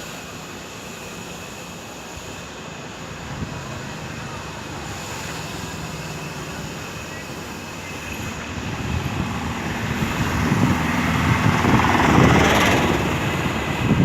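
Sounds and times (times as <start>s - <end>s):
passing vehicle rumbling: 3.1s - 14.0s.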